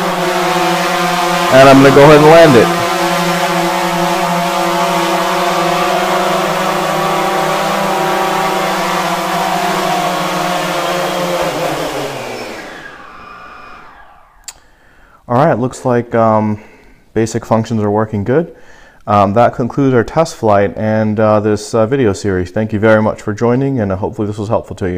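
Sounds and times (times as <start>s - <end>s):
drone propellers humming: 0.0s - 14.5s
short click: 14.4s - 14.6s.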